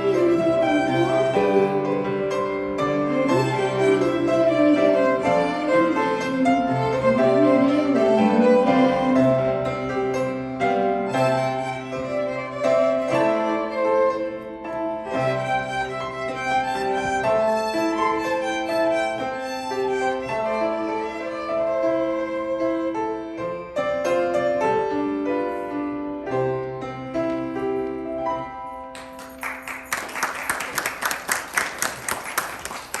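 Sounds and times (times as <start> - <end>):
violins playing: 0.0 - 23.4
piano accompaniment: 0.0 - 33.0
clapping applause: 28.9 - 33.0.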